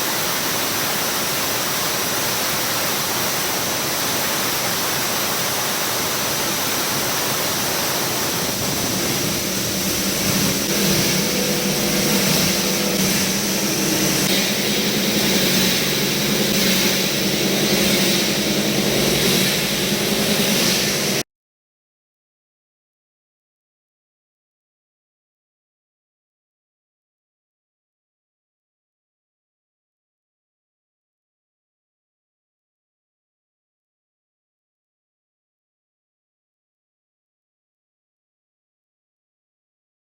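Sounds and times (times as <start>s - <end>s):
blower rush of air: 0.0s - 21.2s
steady machine hum: 0.0s - 21.2s.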